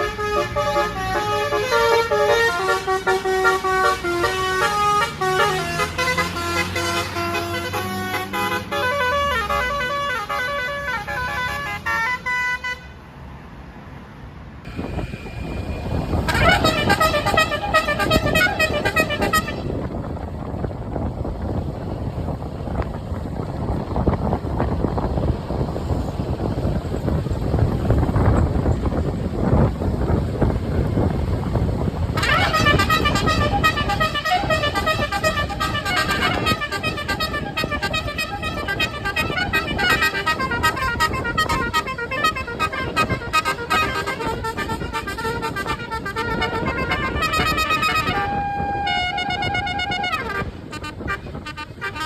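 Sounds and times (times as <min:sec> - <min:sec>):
bus musical horn melody: 0:00.0 - 0:13.0, 0:14.7 - 0:20.2, 0:29.4 - 0:52.0
low rumble of passing bus: 0:00.0 - 0:52.0.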